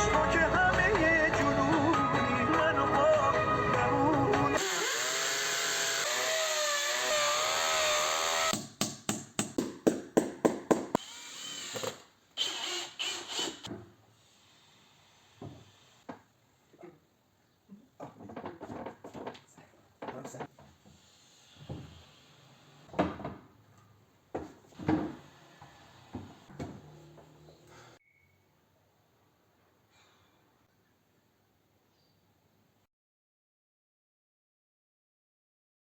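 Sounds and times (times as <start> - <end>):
power drill whining: 4.6 - 8.6, 11.0 - 13.7.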